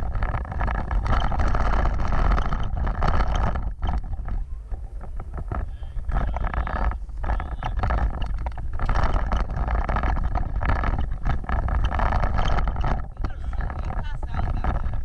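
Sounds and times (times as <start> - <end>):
rattles and knocks: 0.0 - 15.0
vehicle rumble on rough ground: 0.0 - 15.0
wind buffeting microphone: 0.0 - 15.0.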